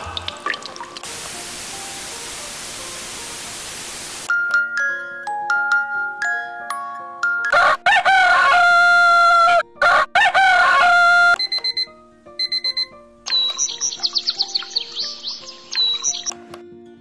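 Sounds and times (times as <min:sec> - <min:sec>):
recorded rooster crowing: 0:07.5 - 0:11.4
recorded birdsong: 0:13.3 - 0:16.4.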